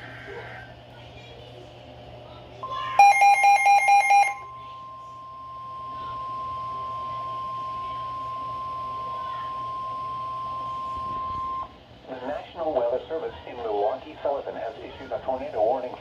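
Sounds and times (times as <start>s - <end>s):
high-pitched alarm tone: 2.6s - 11.7s.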